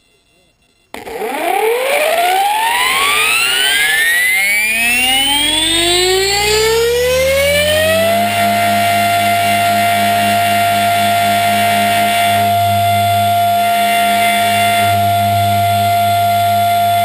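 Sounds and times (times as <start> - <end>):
electric helicopter motor whine: 0.9 - 17.0.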